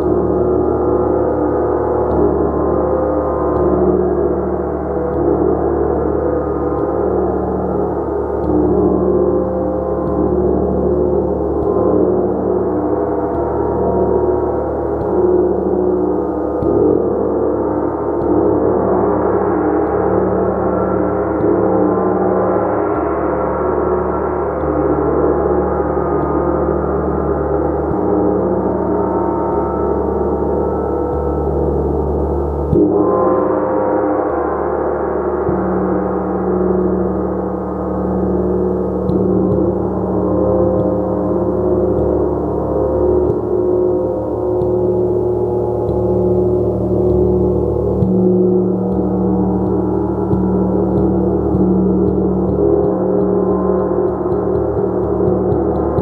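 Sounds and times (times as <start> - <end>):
gong sounding: 28.7 - 56.0.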